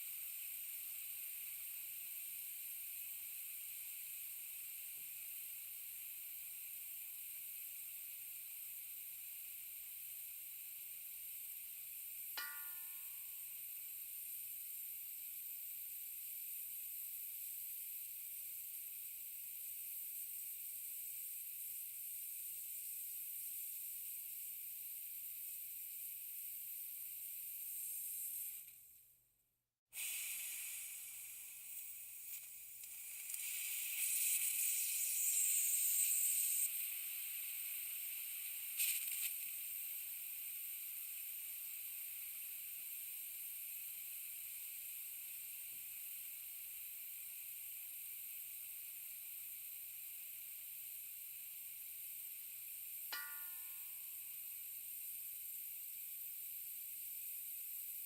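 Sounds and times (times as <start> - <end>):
compressed air hissing: 17.2 - 28.8, 29.9 - 48.8.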